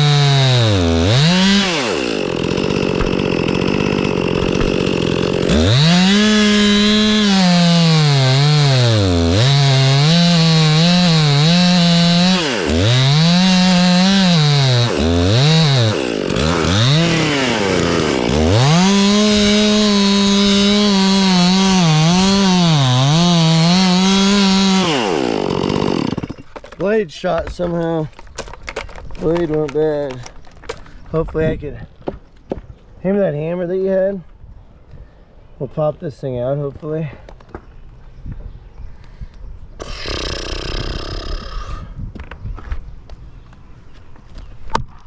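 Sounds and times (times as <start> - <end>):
chainsaw idling and revving: 0.0 - 26.7, 39.8 - 41.8.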